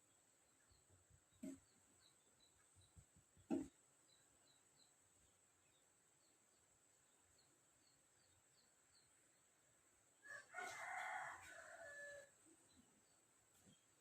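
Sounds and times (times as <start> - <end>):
rooster crowing: 10.2 - 12.3.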